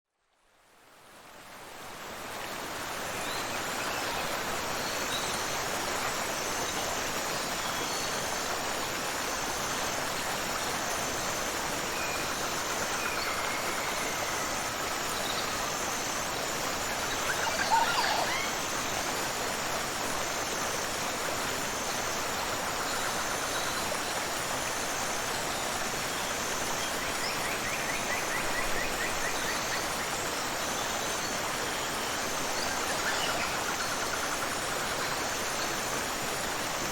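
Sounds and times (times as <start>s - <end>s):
waterfall and river rushing: 0.5s - 36.9s
faint high chirp: 16.8s - 18.6s
bird calls: 16.9s - 18.6s.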